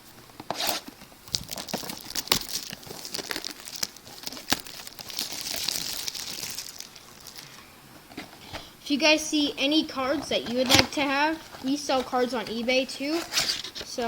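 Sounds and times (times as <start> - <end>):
packaging crinkling and tearing: 0.5 - 7.6.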